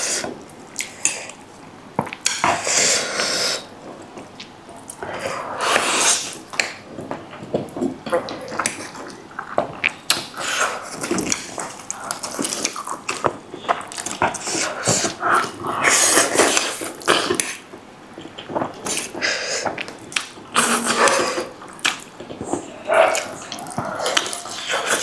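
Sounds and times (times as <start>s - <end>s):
slurping and chewing noodles: 7.6s - 25.0s.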